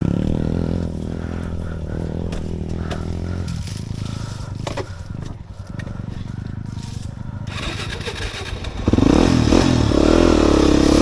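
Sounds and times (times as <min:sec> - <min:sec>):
dirt bike engine running: 0:00.0 - 0:11.0
tyres on dirt: 0:00.0 - 0:11.0.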